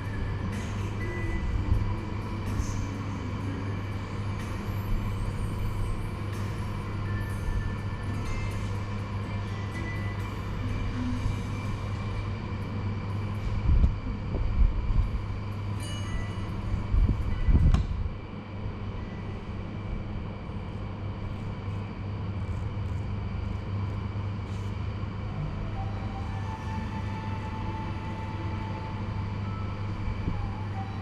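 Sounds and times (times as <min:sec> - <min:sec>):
low electric hum: 0:00.0 - 0:31.0.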